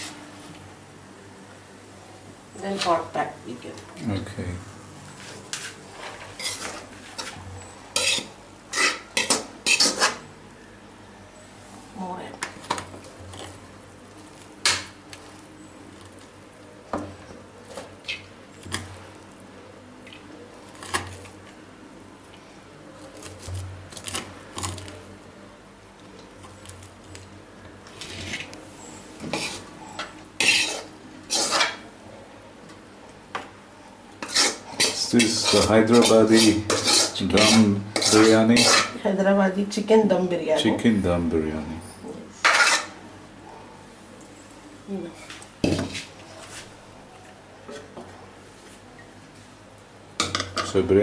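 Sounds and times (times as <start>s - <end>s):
spoon scraping in a pot: 5.2s - 10.2s, 28.0s - 31.8s, 34.2s - 39.0s, 42.4s - 43.0s.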